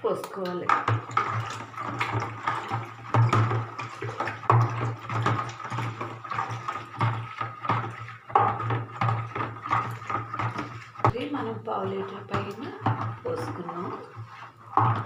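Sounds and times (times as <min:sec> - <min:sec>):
liquid pouring and splashing: 0:00.0 - 0:15.0
stirrer knocking against container: 0:00.1 - 0:15.0.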